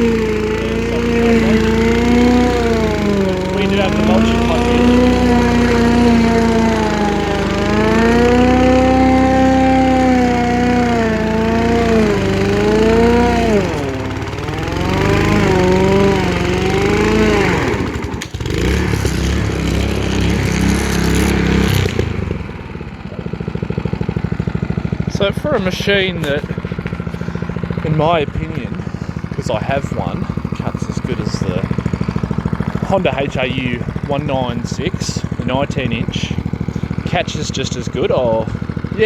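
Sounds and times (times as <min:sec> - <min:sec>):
lawn mower engine running fast: 0:00.0 - 0:39.0.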